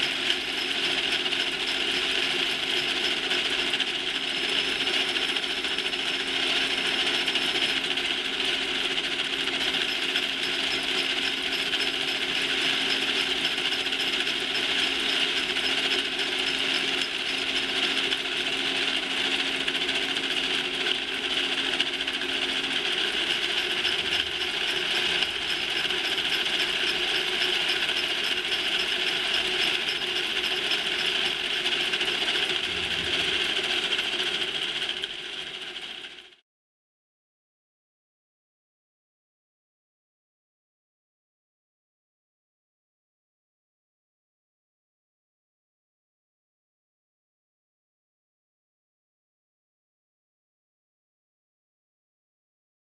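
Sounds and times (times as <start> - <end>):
machinery clatter and rattle: 0.0 - 36.4
steady machine hum: 0.0 - 36.4.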